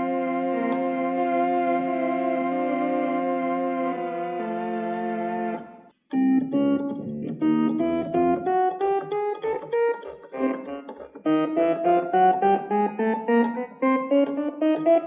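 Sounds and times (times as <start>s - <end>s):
organ holding a chord: 0.0s - 5.6s
quick melody of clipped notes: 0.0s - 15.0s.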